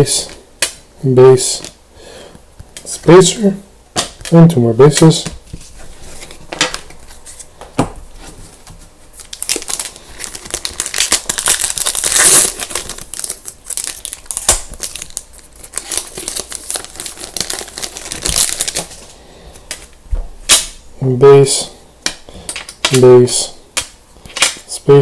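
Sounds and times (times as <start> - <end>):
wrapper crinkling and tearing: 9.1 - 19.9.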